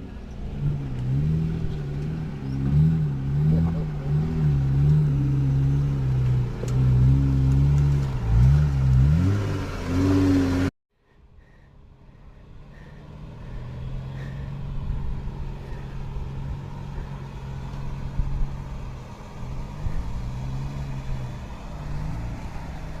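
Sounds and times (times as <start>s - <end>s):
car engine running: 0.0s - 10.7s, 11.4s - 23.0s
low rumble: 11.1s - 23.0s.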